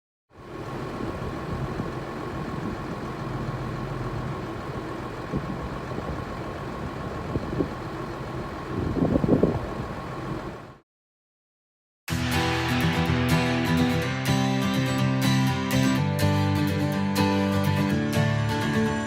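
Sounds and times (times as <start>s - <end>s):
tractor engine running: 0.3s - 10.8s.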